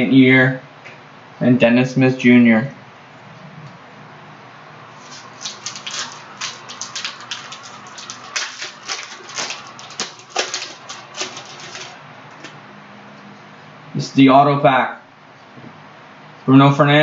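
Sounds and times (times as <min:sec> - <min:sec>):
foil wrapper crinkling and tearing: 0:05.0 - 0:12.5.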